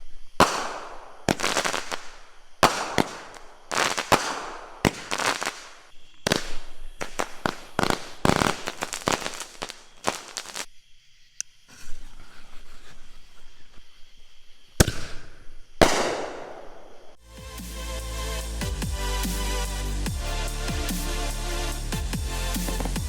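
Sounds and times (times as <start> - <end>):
fireworks banging: 0.4 - 10.7, 22.0 - 23.0.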